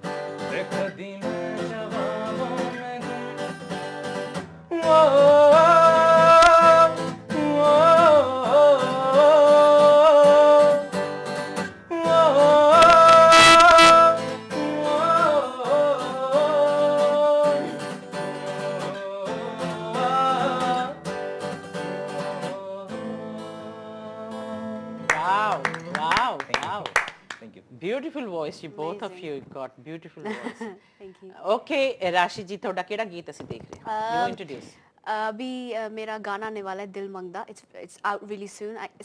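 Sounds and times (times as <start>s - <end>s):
acoustic guitar: 0.0s - 32.5s, 33.4s - 39.0s
person singing long ornamented notes: 11.9s - 21.0s.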